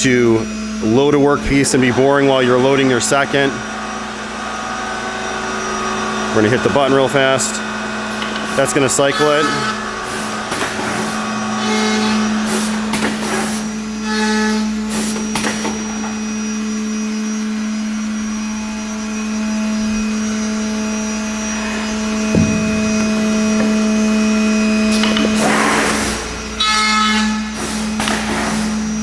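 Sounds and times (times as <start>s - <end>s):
machine humming: 0.0s - 29.0s
single knock: 22.3s - 23.8s.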